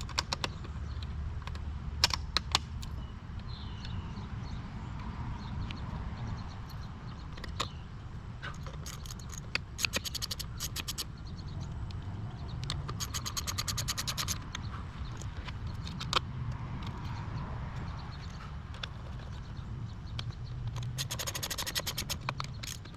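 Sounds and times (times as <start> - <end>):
socket ratchet clicking: 8.8 - 11.1, 12.7 - 14.5, 20.2 - 22.9.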